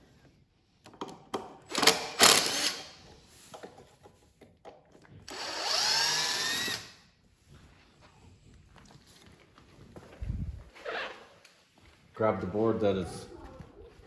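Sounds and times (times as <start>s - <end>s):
power drill whining: 1.7s - 3.0s, 5.3s - 7.0s.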